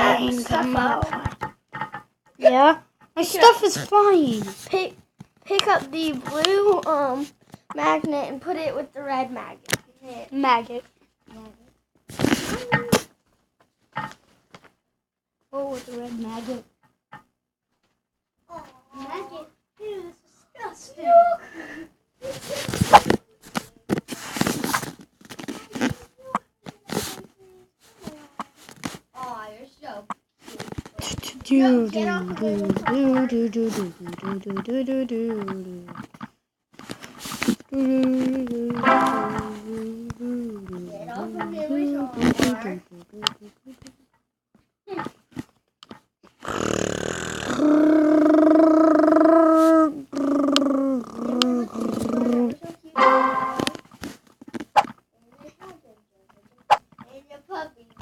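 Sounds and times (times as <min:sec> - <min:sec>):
child's breathy vocal noises: 0:47.4 - 0:52.4.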